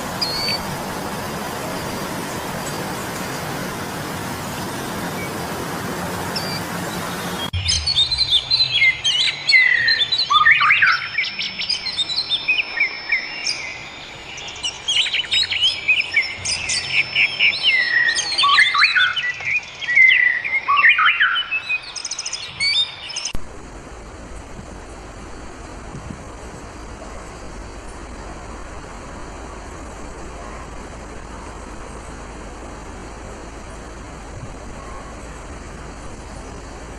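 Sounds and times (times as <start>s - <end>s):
steady rushing hiss: 0.0s - 10.0s, 23.4s - 36.9s
birds chirping and singing: 0.0s - 23.4s.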